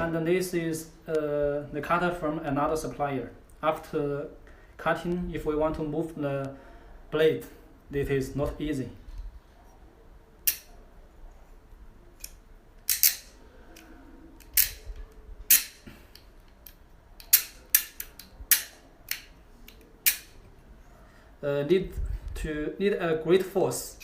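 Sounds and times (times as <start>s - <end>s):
cable cutter clicking: 12.2s - 14.8s.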